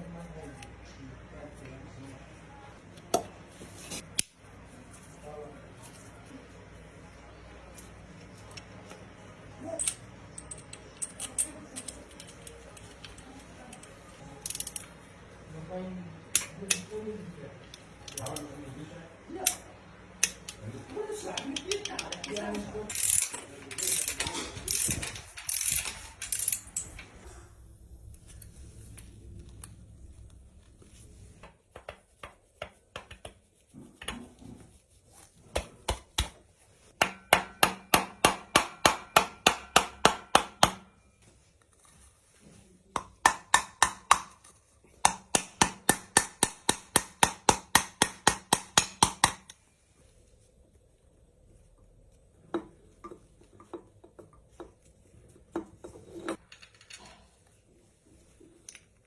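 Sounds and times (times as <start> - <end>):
ratchet wrench clicking: 14.4 - 14.9, 21.4 - 26.9.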